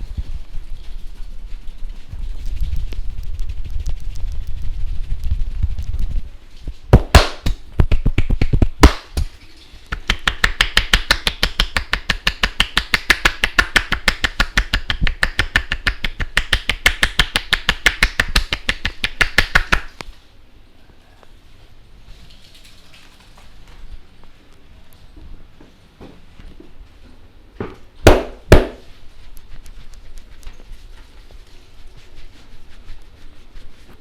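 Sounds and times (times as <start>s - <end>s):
hands slapping on head: 6.9s - 20.0s, 28.1s - 28.9s.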